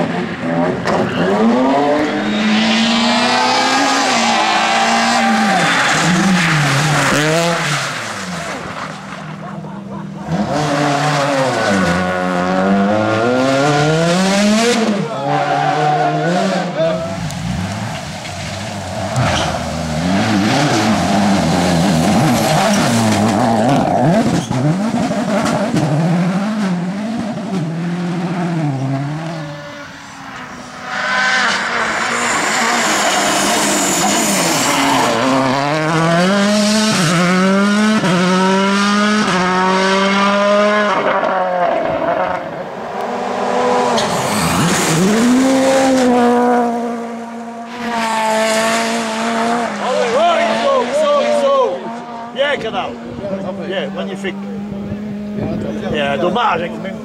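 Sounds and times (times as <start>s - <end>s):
rally car engines revving: 0.0s - 57.0s
tyre squeal: 22.2s - 24.8s.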